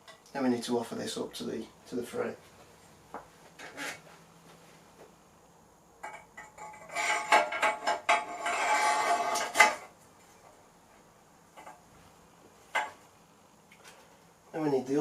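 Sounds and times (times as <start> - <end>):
metallic clinking and scraping: 6.0 - 10.4.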